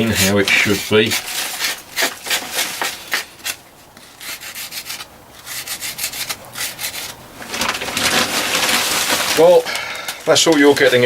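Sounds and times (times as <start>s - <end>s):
rasping scraping strokes on metal: 0.0s - 7.2s.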